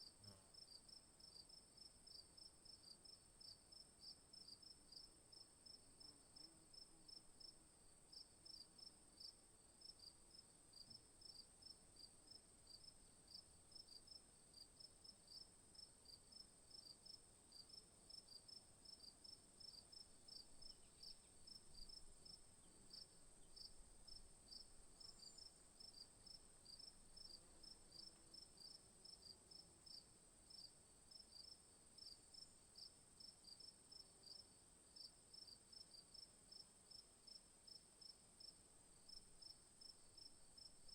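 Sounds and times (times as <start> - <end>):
insects chirping: 18.5 - 29.2.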